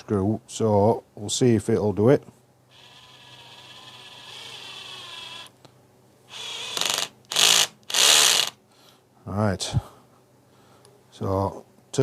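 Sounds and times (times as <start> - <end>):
drill motor whining: 2.7 - 5.5, 6.3 - 8.6
drill clutch ratcheting: 6.3 - 8.6.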